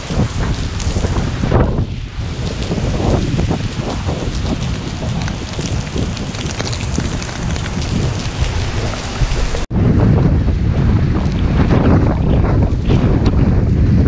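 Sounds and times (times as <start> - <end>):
heavy rain pattering: 0.0 - 9.7
gusting wind buffeting microphone: 0.0 - 14.0.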